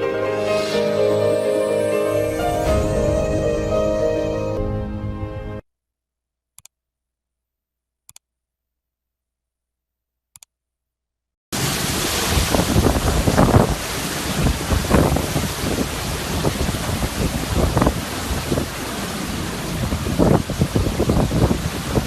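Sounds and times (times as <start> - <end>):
wind buffeting microphone: 12.0 - 22.0.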